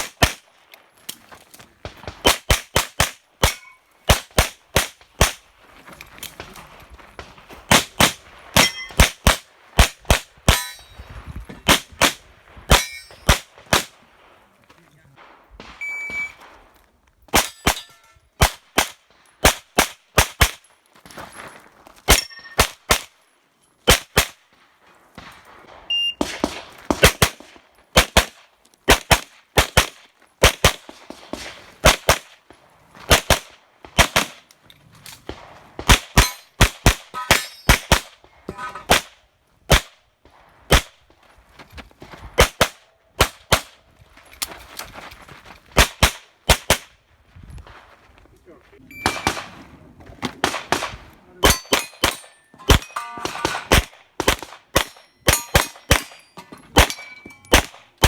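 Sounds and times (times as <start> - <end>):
rapid pistol shots: 1.8 - 5.5, 25.2 - 32.4, 33.1 - 34.4, 35.3 - 37.1, 38.9 - 40.0, 40.7 - 41.0, 50.4 - 52.9, 53.6 - 56.2, 56.8 - 58.0.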